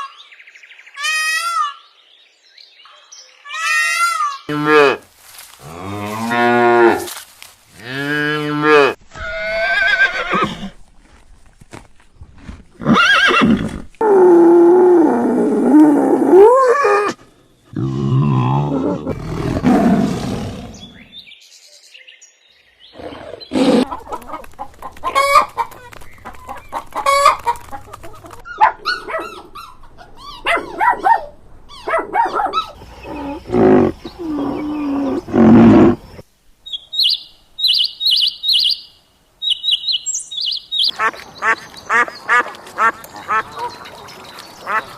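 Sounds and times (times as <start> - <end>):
chickens wavering calls: 23.0 - 35.3
chickens clucking: 23.8 - 31.2
high-pitched chirps: 36.7 - 40.9.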